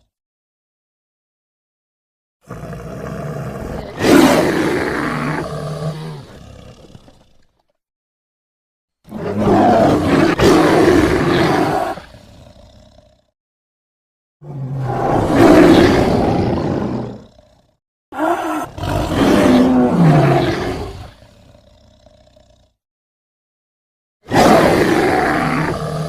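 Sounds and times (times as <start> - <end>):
big cat roars: 2.4 - 7.7, 9.1 - 13.4, 14.4 - 22.8, 24.2 - 26.0.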